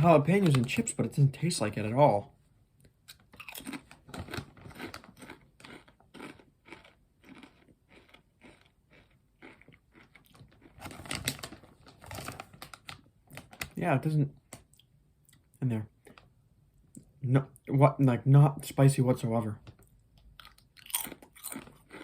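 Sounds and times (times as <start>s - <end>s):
person chewing crisps: 2.9s - 13.6s, 19.8s - 22.0s.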